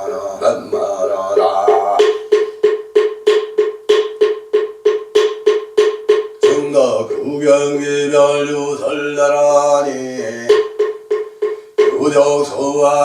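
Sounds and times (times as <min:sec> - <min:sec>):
man chanting: 0:00.0 - 0:02.3, 0:06.4 - 0:10.7, 0:11.8 - 0:13.0.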